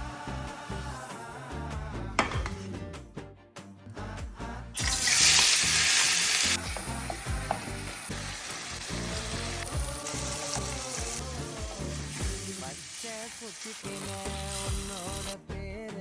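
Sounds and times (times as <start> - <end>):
background music with a beat: 0.0 - 13.2, 14.1 - 16.0
food sizzling in hot oil: 0.1 - 2.4, 4.8 - 15.4.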